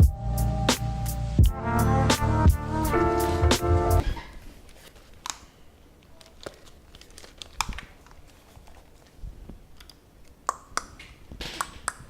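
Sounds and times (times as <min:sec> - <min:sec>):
crinkling handling noises: 0:04.0 - 0:10.4.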